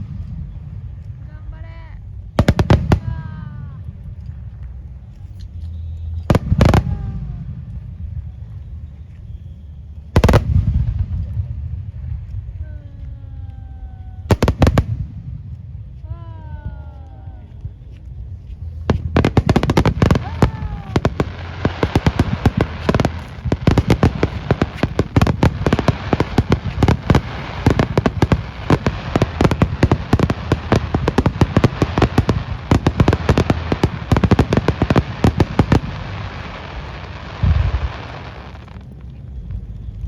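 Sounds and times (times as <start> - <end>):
fireworks bangs and cracks: 2.4 - 3.5, 6.3 - 7.8, 10.2 - 12.4, 14.3 - 15.4, 18.9 - 39.2.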